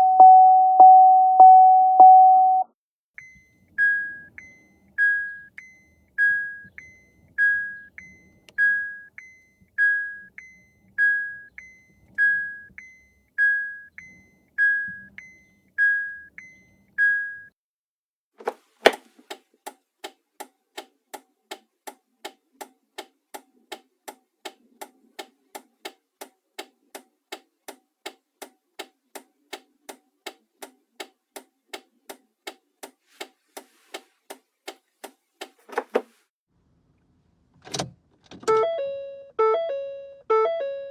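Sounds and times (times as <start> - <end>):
car two-note warning chime: 0.0 - 2.6, 38.5 - 40.9
turn signal ticking: 3.2 - 17.5, 18.8 - 35.6.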